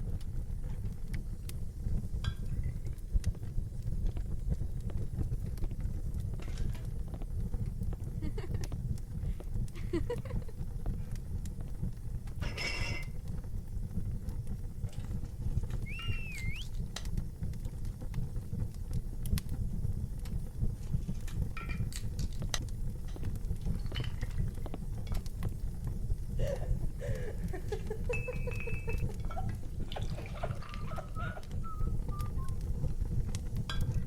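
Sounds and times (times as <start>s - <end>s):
mugs and tableware clinking: 12.4s - 13.1s
wavering squeal: 15.9s - 16.7s
raised voice: 30.9s - 31.5s.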